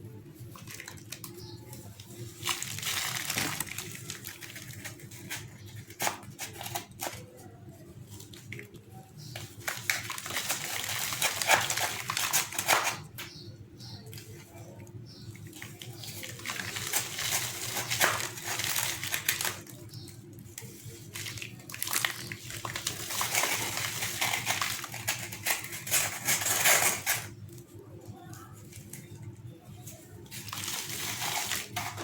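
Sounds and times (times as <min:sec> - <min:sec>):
chunks crumbling and fizzing in water: 0:00.5 - 0:05.1, 0:15.4 - 0:19.8, 0:20.8 - 0:26.2.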